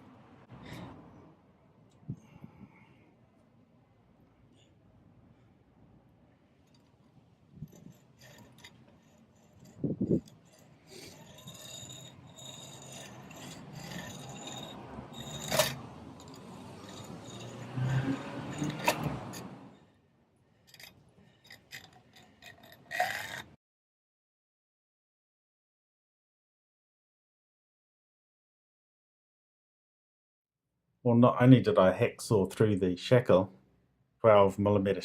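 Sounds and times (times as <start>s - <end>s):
padlock rubbing and scraping: 6.5s - 19.9s, 20.6s - 23.6s
metal padlock clinking: 7.7s - 19.7s.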